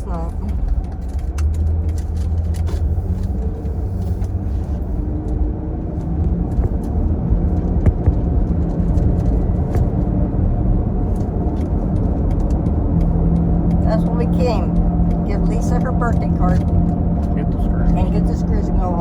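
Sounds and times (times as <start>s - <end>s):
car engine rumbling: 0.0s - 19.0s.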